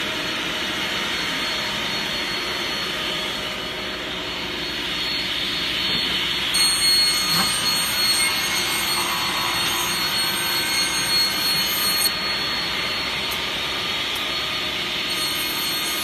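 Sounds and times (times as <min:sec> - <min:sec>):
shrill high tones: 0:01.0 - 0:16.0
rip saw whirring: 0:05.8 - 0:16.0.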